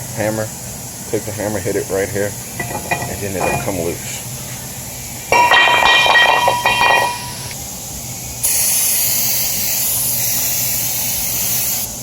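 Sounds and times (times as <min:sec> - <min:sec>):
hammer striking metal rotor: 0:02.6 - 0:03.8, 0:05.3 - 0:07.6
aerosol spray hissing: 0:08.4 - 0:12.0.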